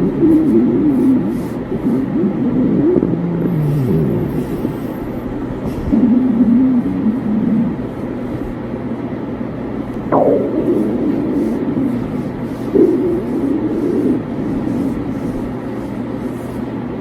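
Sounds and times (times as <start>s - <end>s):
stomach growling: 1.8s - 7.9s, 10.1s - 14.9s.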